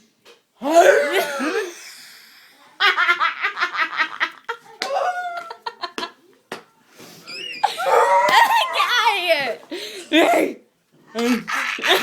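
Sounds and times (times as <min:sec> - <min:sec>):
young people laughing: 0:02.8 - 0:06.2, 0:11.2 - 0:12.0.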